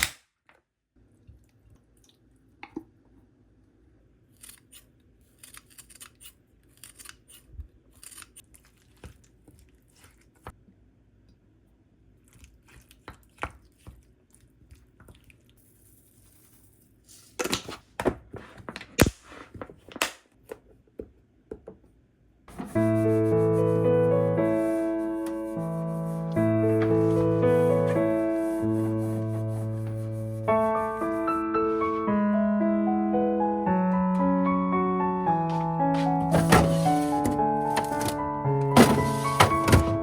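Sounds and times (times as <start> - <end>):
clicks and knocks of household items: 36.3 - 40.0.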